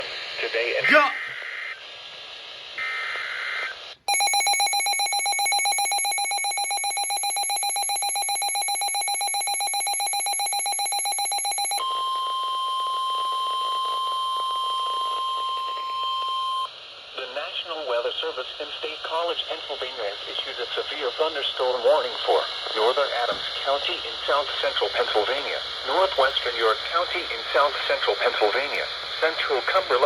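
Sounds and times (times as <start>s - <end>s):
steady single-pitch alarm tone: 4.1s - 16.7s.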